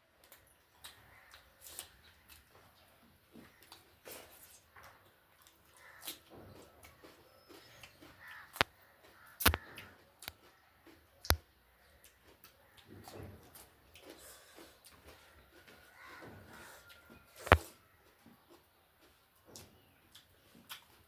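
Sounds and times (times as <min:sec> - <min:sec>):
mouth and dish noises: 0:17.4 - 0:17.7.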